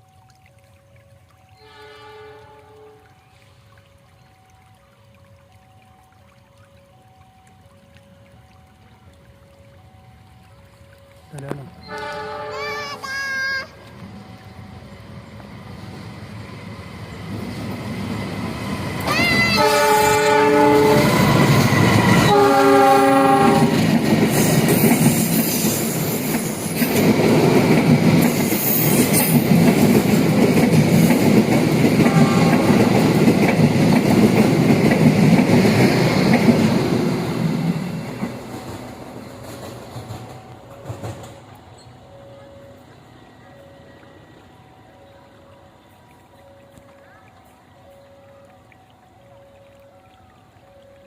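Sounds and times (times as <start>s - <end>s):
train horn: 1.6s - 3.2s, 11.8s - 13.0s, 19.0s - 23.8s, 32.0s - 33.0s
train wheels clattering on rails: 37.7s - 42.0s.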